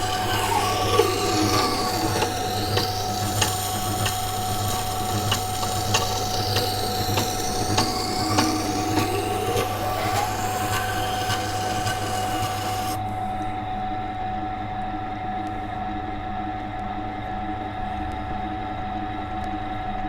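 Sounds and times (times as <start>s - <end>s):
stone wheel grinder humming: 0.0s - 13.1s.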